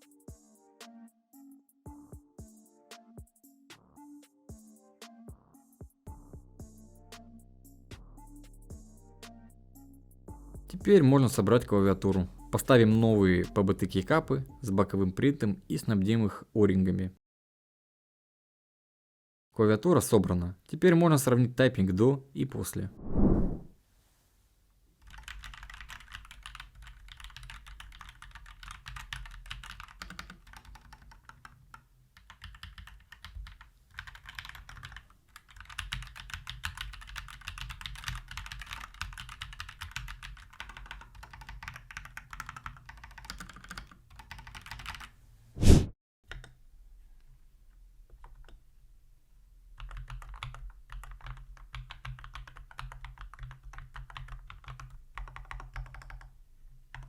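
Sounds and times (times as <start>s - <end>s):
mechanical keyboard typing: 25.0s - 45.1s, 49.8s - 56.3s.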